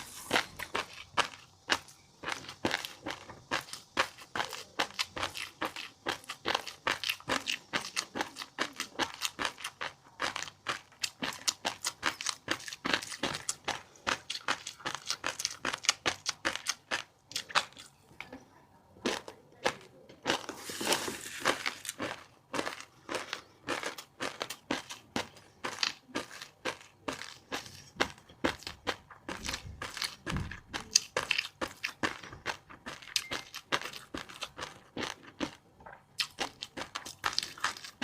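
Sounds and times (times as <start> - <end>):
crunchy chewing: 0.0 - 38.0.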